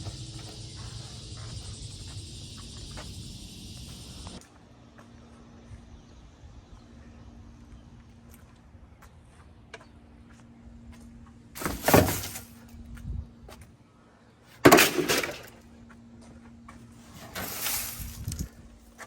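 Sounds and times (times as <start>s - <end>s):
junk crashing with breaking glass: 11.6s - 12.6s, 14.6s - 15.6s, 17.1s - 18.5s.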